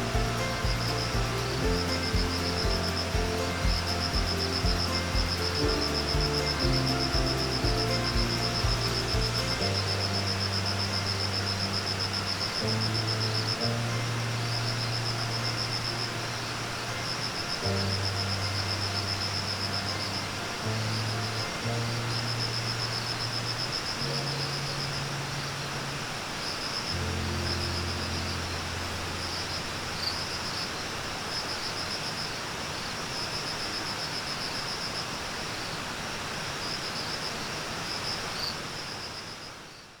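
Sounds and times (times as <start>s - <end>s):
low held music notes: 0.0s - 26.2s
insects trilling: 0.0s - 35.9s, 36.5s - 40.0s
constant hiss: 0.0s - 40.0s.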